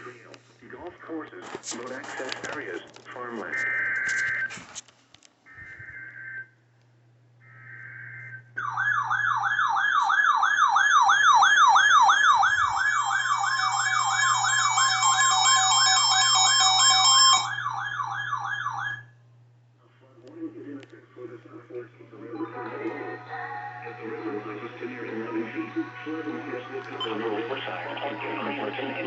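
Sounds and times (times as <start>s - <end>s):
siren-like alert tone: 7.6s - 19.1s
warbly data bursts: 22.0s - 29.0s.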